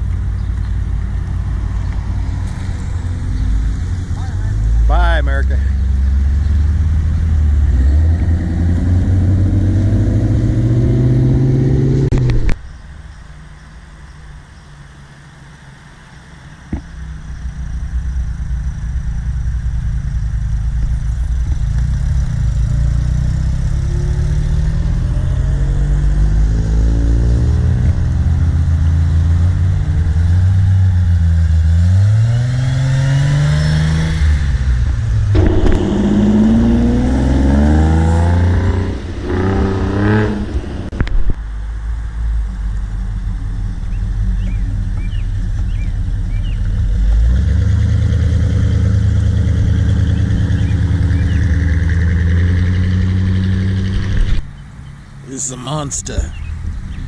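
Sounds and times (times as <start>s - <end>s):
car engine revving: 1.4s - 12.6s, 17.2s - 41.4s, 43.2s - 54.4s.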